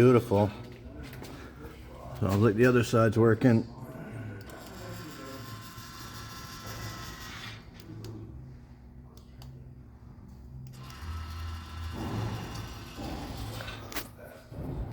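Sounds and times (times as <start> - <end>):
small motor whirring: 4.4 - 7.9, 10.7 - 14.0.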